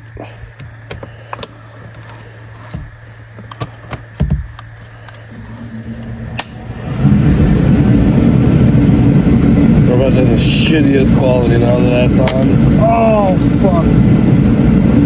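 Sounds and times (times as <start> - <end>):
car engine starting and running loudly: 5.3 - 15.0.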